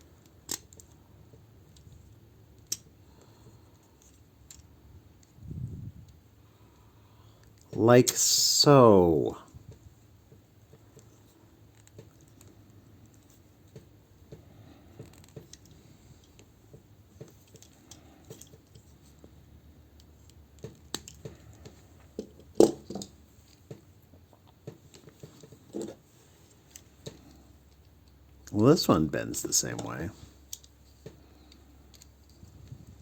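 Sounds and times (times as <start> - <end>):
plastic toy parts clicking: 0.2 - 1.0, 2.6 - 3.0, 3.9 - 5.3, 15.0 - 16.4, 17.2 - 18.9, 20.0 - 21.6, 29.7 - 30.7.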